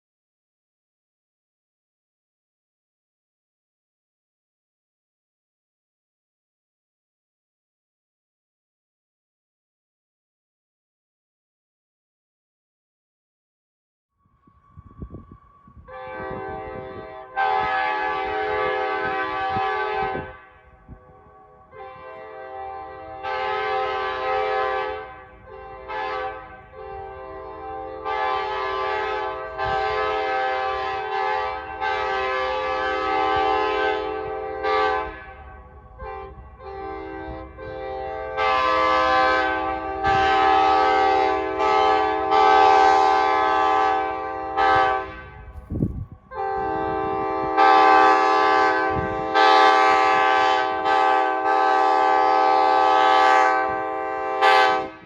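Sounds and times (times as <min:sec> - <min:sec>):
locomotive air horn blasts: 0:15.1 - 0:55.0.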